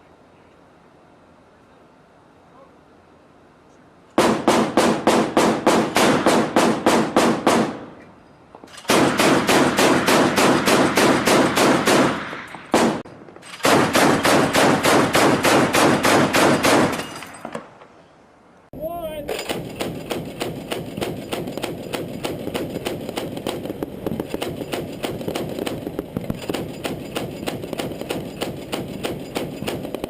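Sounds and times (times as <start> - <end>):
chain gun firing bursts: 4.2 - 7.9, 8.7 - 17.4, 19.3 - 30.0.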